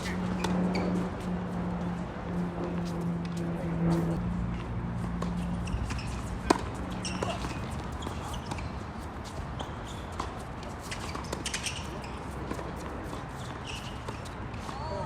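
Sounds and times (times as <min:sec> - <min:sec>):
short high squeaks: 0:06.9 - 0:12.3, 0:13.3 - 0:14.2.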